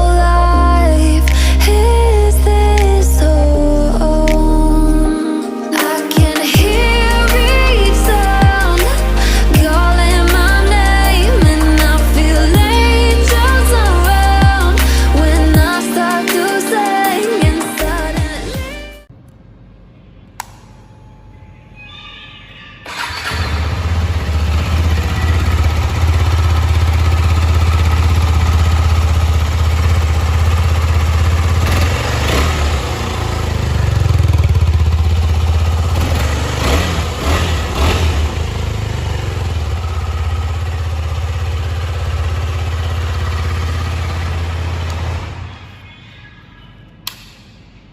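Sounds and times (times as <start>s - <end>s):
motorcycle engine idling: 6.2s - 15.7s, 22.9s - 46.0s
engine throttle blips: 22.9s - 47.2s.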